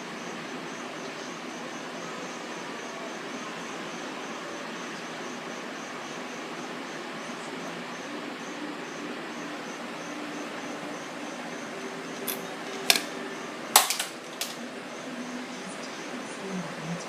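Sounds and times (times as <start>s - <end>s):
background hiss: 0.0s - 17.0s
faint hum: 0.0s - 17.0s
sharp clicks: 12.2s - 13.1s, 13.8s - 14.6s.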